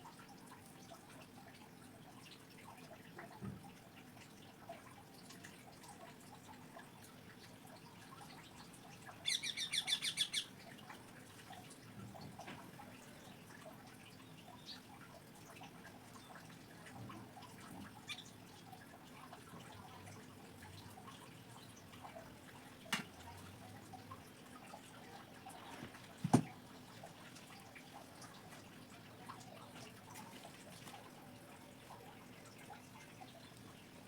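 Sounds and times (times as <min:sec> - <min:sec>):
small bird chirping: 0:09.2 - 0:10.5.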